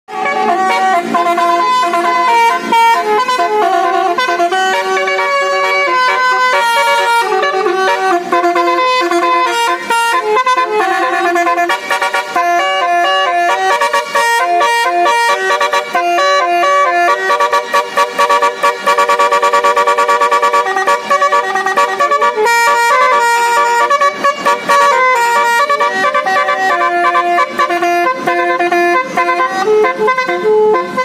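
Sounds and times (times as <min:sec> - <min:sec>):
bus horn playing a tune: 0:00.1 - 0:31.0.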